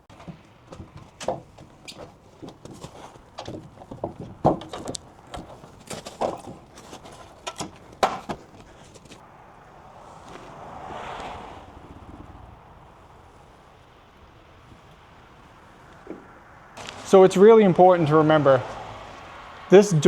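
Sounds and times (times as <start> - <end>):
wind noise: 0.0 - 20.0
sharp loud knocks: 0.1 - 9.2.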